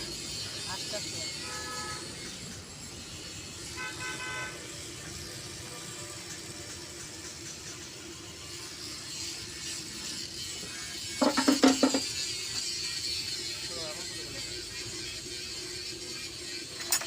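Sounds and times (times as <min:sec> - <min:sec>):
traffic noise: 0:00.0 - 0:17.0
vehicle horn toots: 0:01.4 - 0:02.2, 0:03.7 - 0:04.8.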